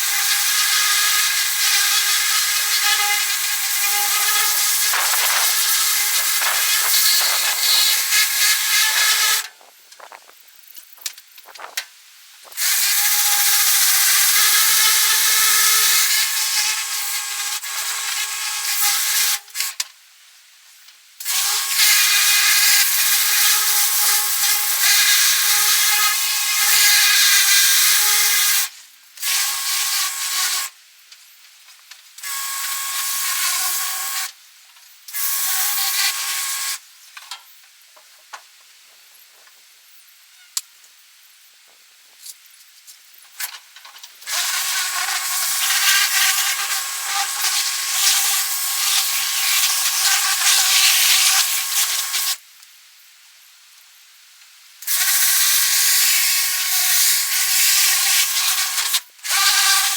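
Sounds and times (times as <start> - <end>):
power tool whining and hissing: 0.0 - 10.3, 44.2 - 52.4.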